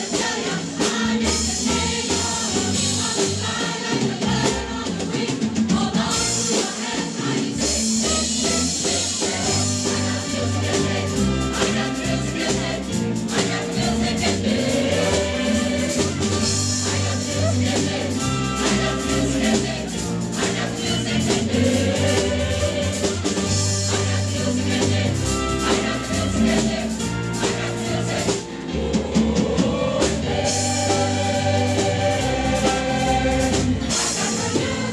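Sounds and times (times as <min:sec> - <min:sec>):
choir singing: 0:00.0 - 0:34.9
percussion: 0:00.0 - 0:34.9
steady bass: 0:07.8 - 0:34.9.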